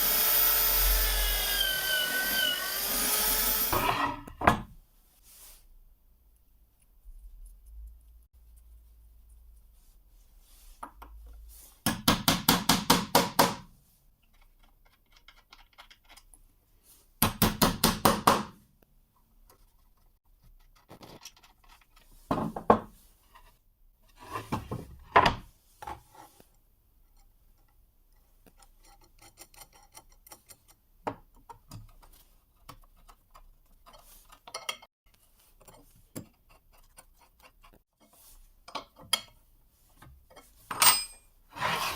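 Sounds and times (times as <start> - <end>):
tools clicking and tapping: 14.3 - 16.4, 28.4 - 34.9, 38.6 - 39.4, 40.0 - 41.2
metal scraping on metal: 41.5 - 41.9.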